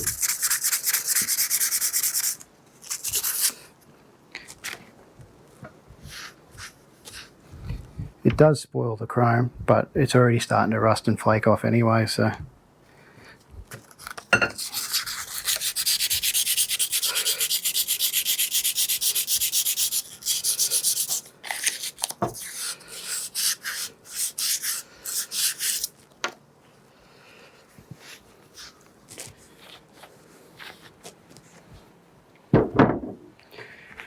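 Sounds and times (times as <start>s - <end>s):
sandpaper rubbing on metal: 0.0s - 3.5s, 14.6s - 21.2s, 22.4s - 25.9s.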